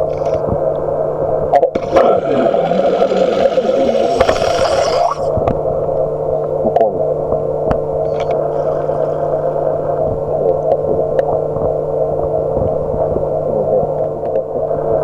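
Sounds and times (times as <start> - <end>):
steady hum: 0.0 - 15.0
rushing hiss with gliding tones: 1.8 - 5.3.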